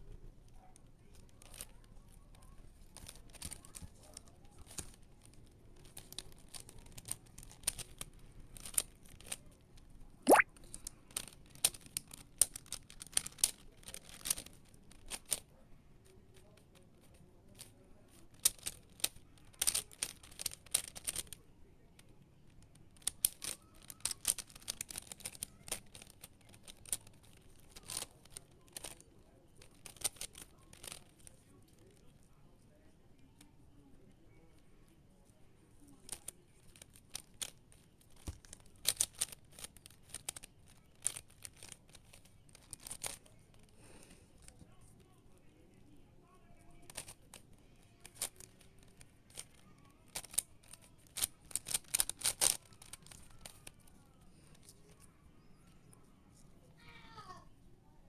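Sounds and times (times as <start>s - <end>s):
puzzle cube clicking: 10.3s - 10.5s, 18.4s - 21.3s, 23.0s - 28.9s, 29.6s - 31.1s, 36.1s - 43.2s, 49.3s - 53.9s.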